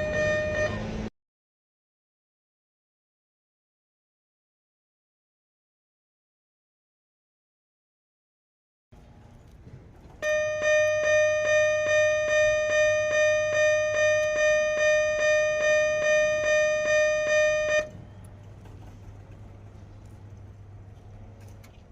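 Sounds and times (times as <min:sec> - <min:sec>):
railway crossing bell ringing: 0:00.0 - 0:01.1, 0:10.2 - 0:18.4.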